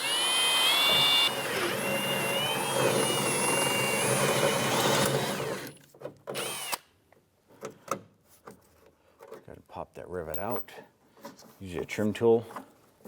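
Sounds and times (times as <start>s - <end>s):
electric drill whining: 0.0s - 6.8s.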